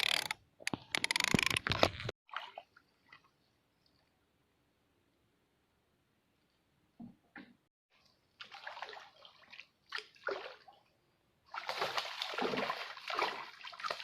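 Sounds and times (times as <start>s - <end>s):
water splashing and sloshing: 1.7s - 4.1s, 7.9s - 14.0s.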